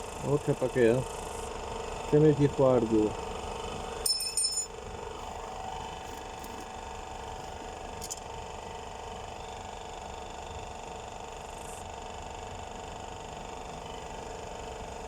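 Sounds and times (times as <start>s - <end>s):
steady background hum: 0.0s - 15.0s
metallic clink ringing: 4.0s - 4.7s.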